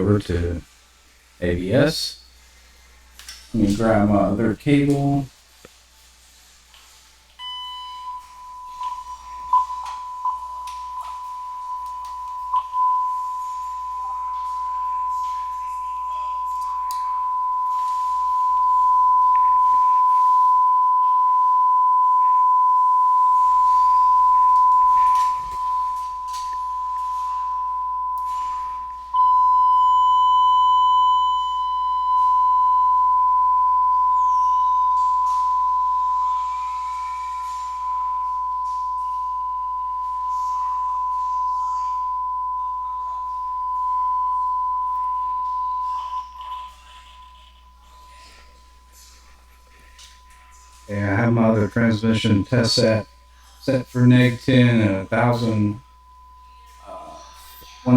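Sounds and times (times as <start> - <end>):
telephone test tone: 7.4 - 48.5.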